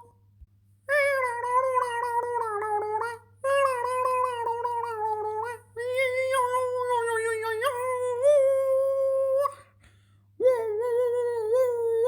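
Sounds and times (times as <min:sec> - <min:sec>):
person humming a high note: 0:00.9 - 0:09.6.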